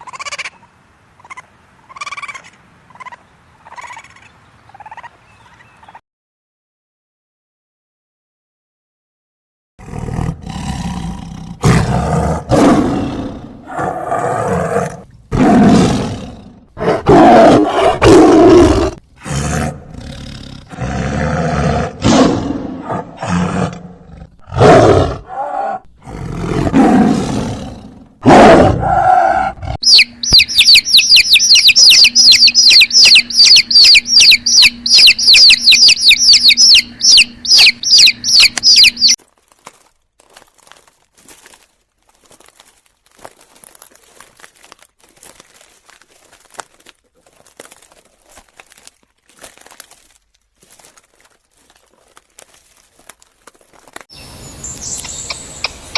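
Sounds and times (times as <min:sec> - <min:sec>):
tiger roaring and growling: 0:09.8 - 0:29.8
high bird-like chirps: 0:29.8 - 0:39.2, 0:54.1 - 0:55.9.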